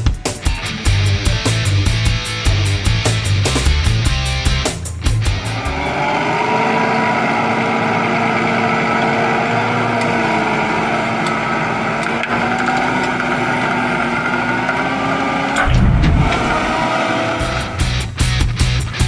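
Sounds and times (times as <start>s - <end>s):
held whining tone: 9.8s - 17.9s.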